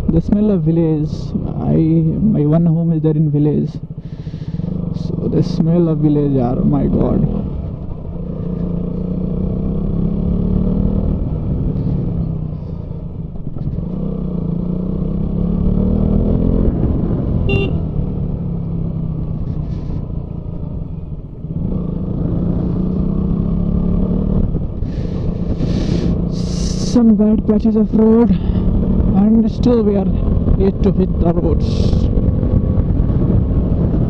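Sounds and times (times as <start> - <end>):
wind and road rumble: 0.0 - 34.0
motorcycle engine running: 3.8 - 34.0.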